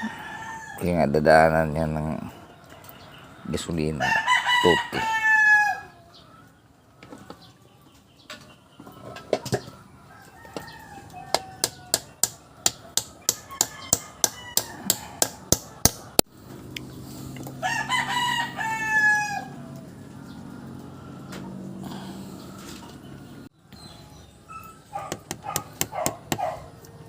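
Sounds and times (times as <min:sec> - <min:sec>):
rooster crowing: 0:00.0 - 0:01.1, 0:04.0 - 0:06.2, 0:10.0 - 0:12.1, 0:12.7 - 0:15.9, 0:17.5 - 0:22.4
sharp taps: 0:25.1 - 0:26.5.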